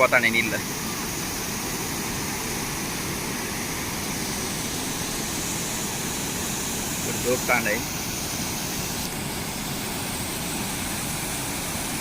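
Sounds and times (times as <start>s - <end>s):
water rushing over dam: 0.0s - 12.0s.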